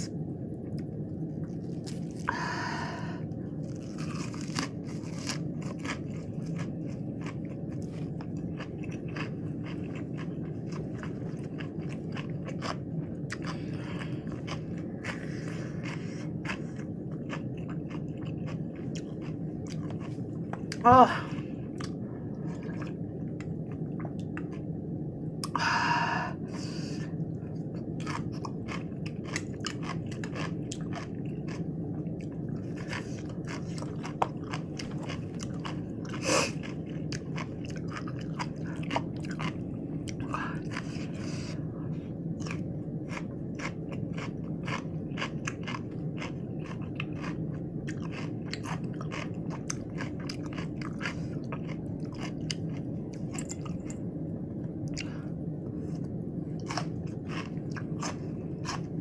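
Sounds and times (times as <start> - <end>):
chewing crunchy lettuce: 0.0 - 24.7, 26.6 - 54.2, 54.8 - 59.0.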